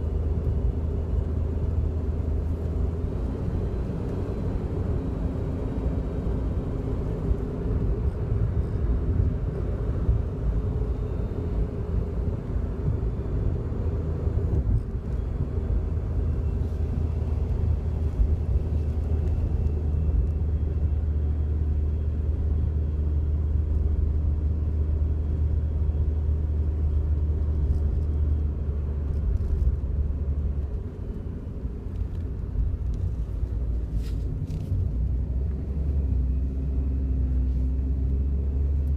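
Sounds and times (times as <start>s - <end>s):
engine and road rumble: 0.0s - 38.9s.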